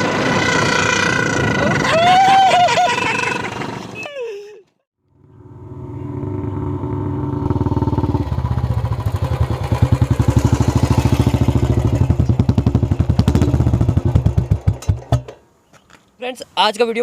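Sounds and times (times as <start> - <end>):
motorcycle engine idling: 5.1 - 15.4.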